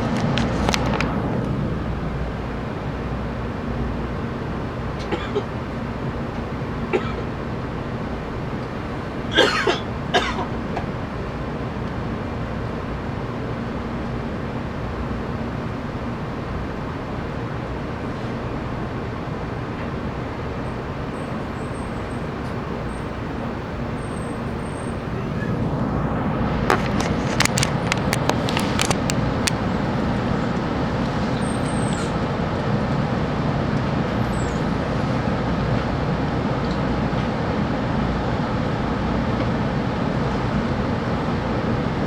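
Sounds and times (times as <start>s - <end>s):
train cabin rumble and rush: 0.0s - 42.0s
sharp clicks: 26.5s - 31.3s.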